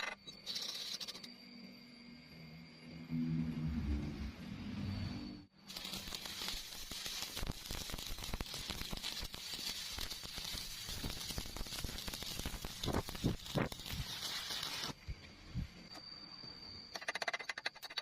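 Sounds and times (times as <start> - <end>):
welding arc crackling: 5.6 - 15.0.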